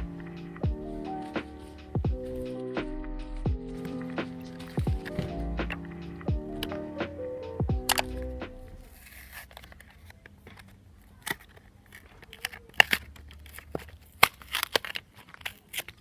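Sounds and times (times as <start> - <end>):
plastic packaging crinkling: 3.7 - 5.4, 8.8 - 16.0
sharp clicks and taps: 3.8 - 8.8.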